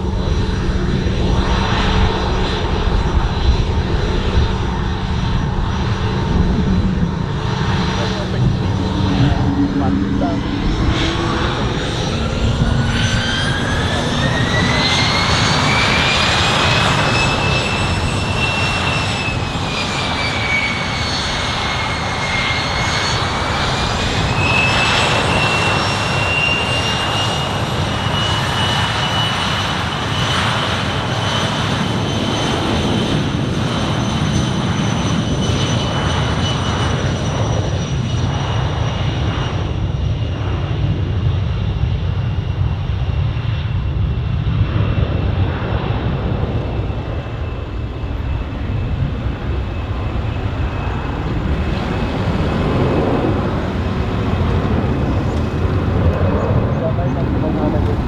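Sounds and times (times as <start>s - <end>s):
jet engine whine: 0.0s - 58.0s
low rumble: 3.9s - 17.0s, 47.8s - 58.0s.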